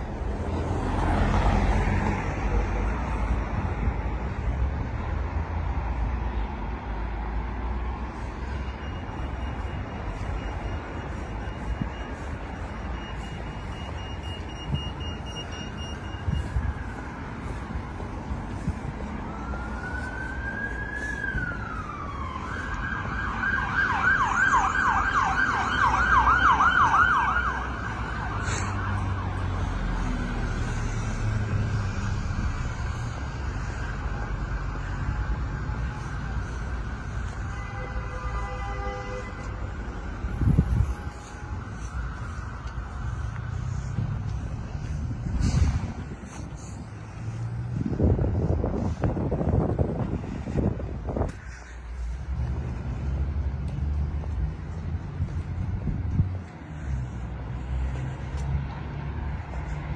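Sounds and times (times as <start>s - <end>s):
traffic rumbling: 0.0s - 59.9s
emergency vehicle siren wailing: 0.4s - 4.4s, 7.4s - 38.0s, 39.3s - 51.2s.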